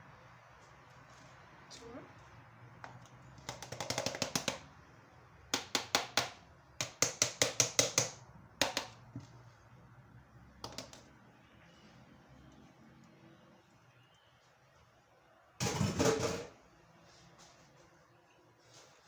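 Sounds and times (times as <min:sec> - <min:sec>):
quick sharp kitchen taps: 0:05.5 - 0:09.3.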